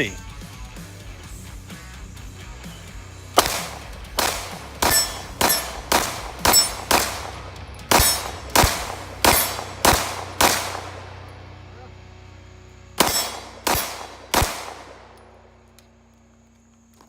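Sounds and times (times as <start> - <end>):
pistol shots: 3.4 - 11.4, 13.0 - 15.7.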